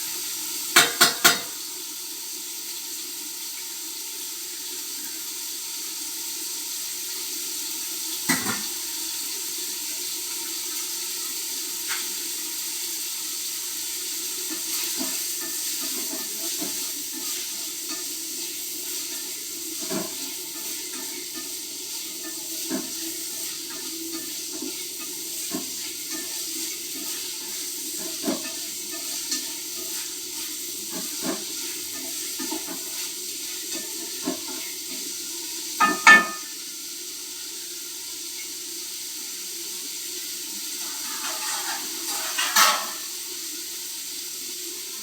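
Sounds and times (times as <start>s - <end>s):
food sizzling in a pan: 0.0s - 45.0s
spoon knocking on a pan: 0.7s - 1.6s, 8.3s - 8.8s, 35.8s - 36.6s, 41.0s - 43.0s.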